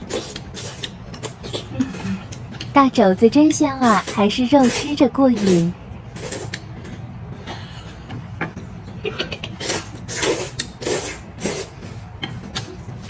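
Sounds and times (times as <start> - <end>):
person chewing wetly: 0.0 - 2.7.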